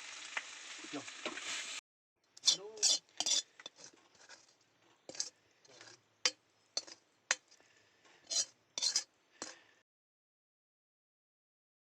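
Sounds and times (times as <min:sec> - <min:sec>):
metal spatula scraping a pan: 0:02.4 - 0:09.7.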